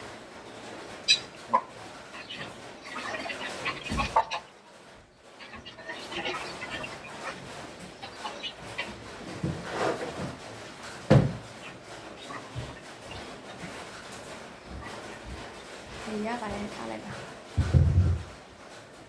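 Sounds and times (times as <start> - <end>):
chicken clucking: 0.0 - 19.0
soft low thump: 17.6 - 18.4.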